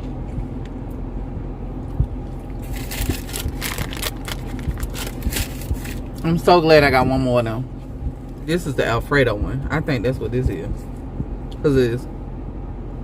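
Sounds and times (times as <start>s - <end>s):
steady low hum: 0.0s - 13.0s
food crinkling and crackling: 2.2s - 6.3s.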